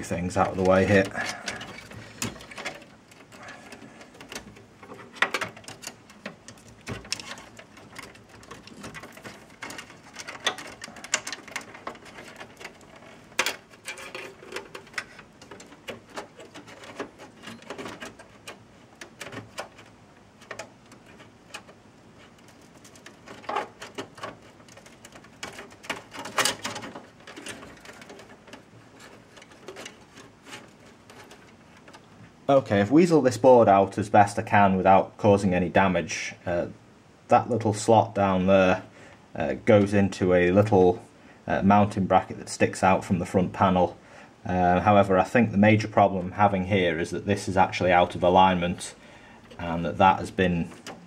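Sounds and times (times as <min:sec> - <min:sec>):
plastic and metal clicks and knocks: 0:00.4 - 0:32.3.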